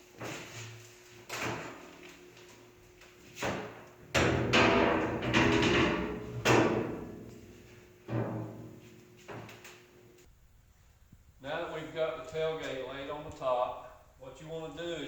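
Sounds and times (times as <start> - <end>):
metal tailgate clanking: 4.2 - 7.4.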